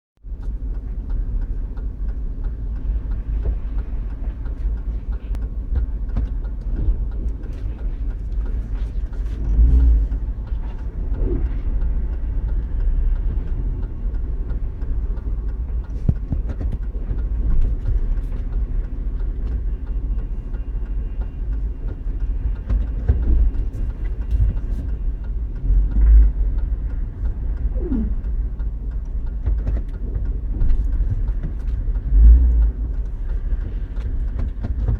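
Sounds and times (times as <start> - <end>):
low road rumble: 0.2 - 34.9.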